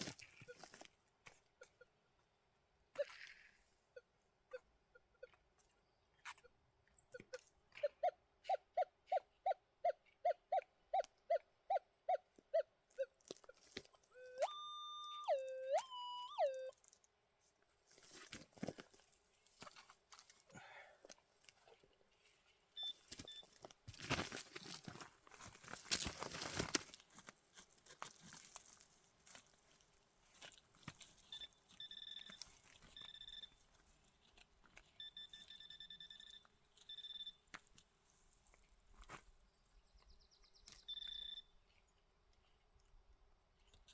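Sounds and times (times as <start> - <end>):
metal detector beeping: 0.2 - 0.8, 13.0 - 16.8, 22.8 - 23.7, 31.2 - 33.8, 34.8 - 37.5, 40.8 - 41.6.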